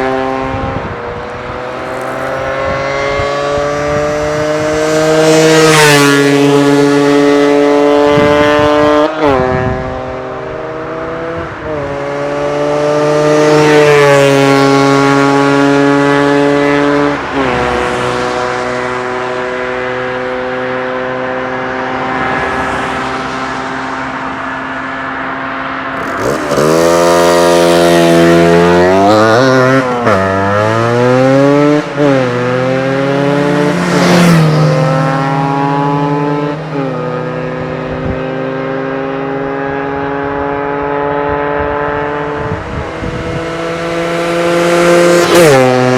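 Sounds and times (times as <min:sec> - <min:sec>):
motorcycle engine revving: 0:00.0 - 0:17.5, 0:25.9 - 0:45.9.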